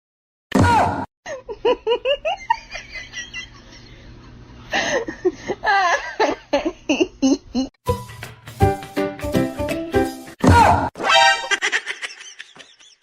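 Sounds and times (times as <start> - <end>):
person giggling: 1.3 - 7.7, 11.4 - 13.0.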